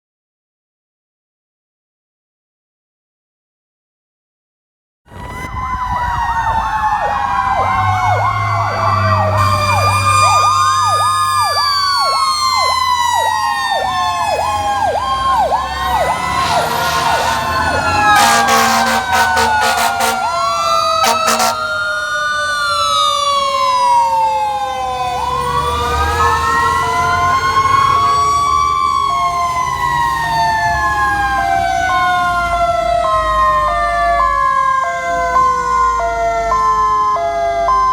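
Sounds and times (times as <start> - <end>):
sirens yelping and wailing: 5.1 - 37.9
truck engines rumbling: 5.1 - 37.9
two-tone hi-lo siren: 5.1 - 37.9
short loud horn blasts: 16.6 - 20.3, 21.0 - 21.7.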